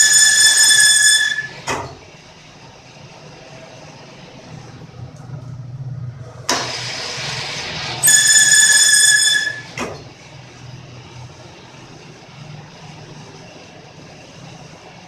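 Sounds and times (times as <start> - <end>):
cutting tool squealing on steel: 0.0 - 1.6, 8.0 - 9.8.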